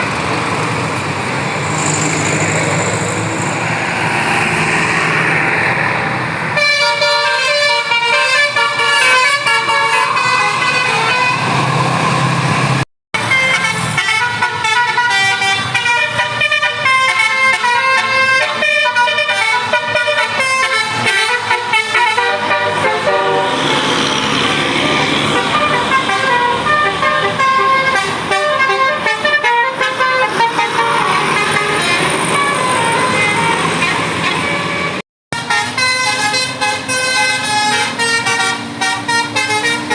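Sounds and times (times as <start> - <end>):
musical air horns playing tunes: 6.6 - 11.7, 13.2 - 24.0, 24.8 - 39.9.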